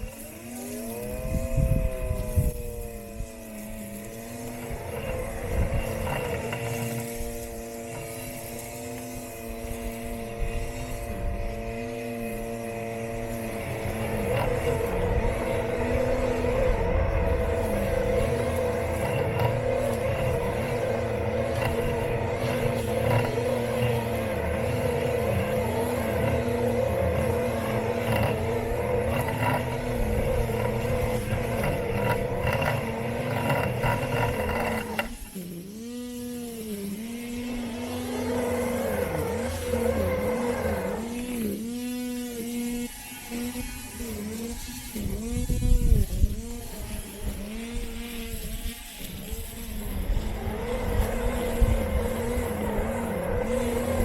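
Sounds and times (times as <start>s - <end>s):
rumbling over ground: 0.0s - 35.3s, 49.3s - 54.0s
electric motor whine: 0.0s - 54.0s.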